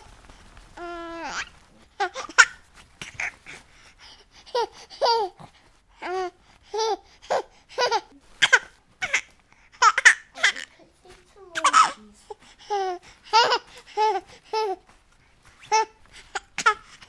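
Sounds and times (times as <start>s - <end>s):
baby laughing and babbling: 0.8s - 3.6s, 4.4s - 15.0s, 15.7s - 17.0s.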